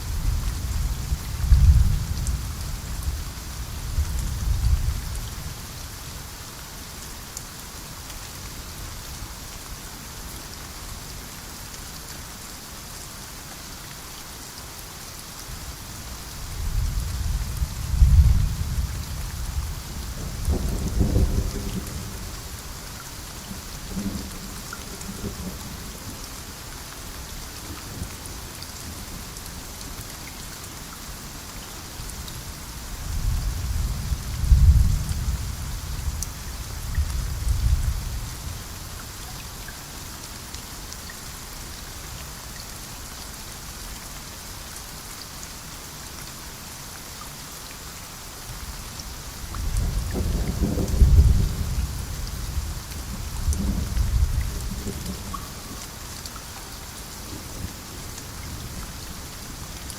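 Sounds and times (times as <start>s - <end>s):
steady rain falling: 0.0s - 59.9s
thunder rumbling: 18.0s - 22.3s, 49.6s - 55.3s.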